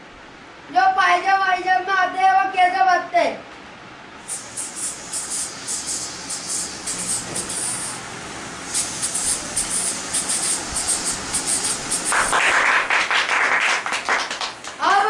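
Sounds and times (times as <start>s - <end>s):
mouth-made train sound effect: 4.3s - 12.7s.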